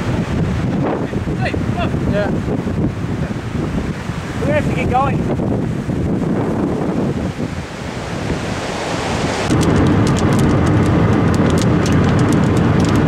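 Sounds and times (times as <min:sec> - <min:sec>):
car low rumble: 0:00.0 - 0:13.0
wind buffeting microphone: 0:00.0 - 0:13.0
sharp ticks: 0:09.5 - 0:13.0.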